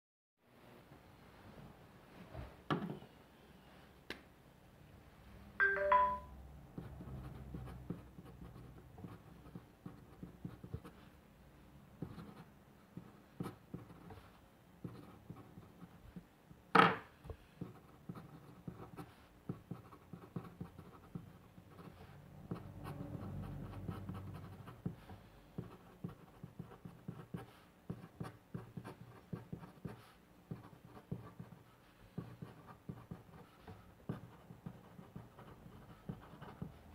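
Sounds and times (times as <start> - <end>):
pen scratching on paper: 6.8 - 11.0, 12.0 - 16.2, 17.6 - 36.9.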